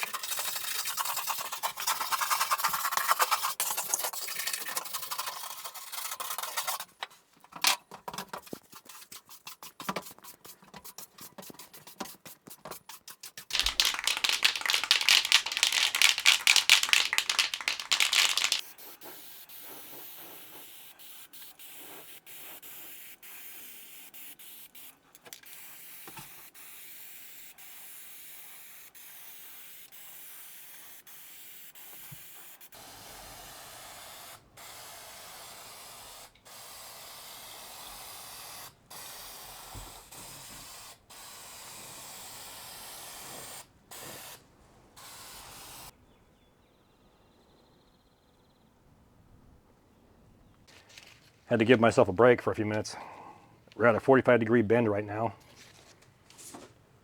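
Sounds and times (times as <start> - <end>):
scraping and sanding steel by hand: 0.0 - 7.2.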